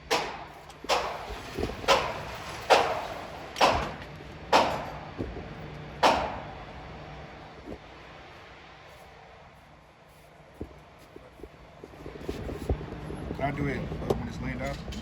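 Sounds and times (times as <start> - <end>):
gunshots with echo: 0.1 - 5.1.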